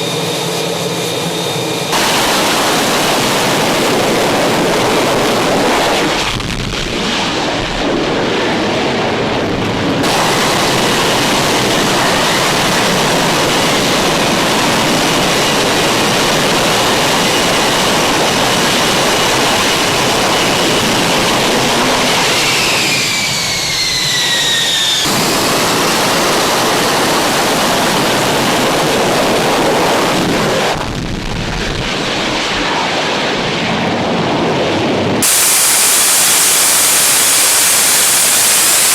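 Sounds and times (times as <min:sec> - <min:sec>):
jet engine roar: 0:00.0 - 0:38.9
high whine sliding down: 0:35.2 - 0:38.9.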